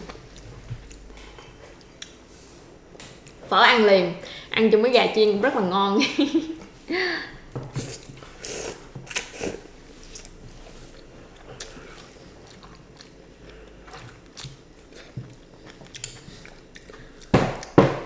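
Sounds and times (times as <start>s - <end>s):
person chewing crispy chicken: 7.8s - 17.3s.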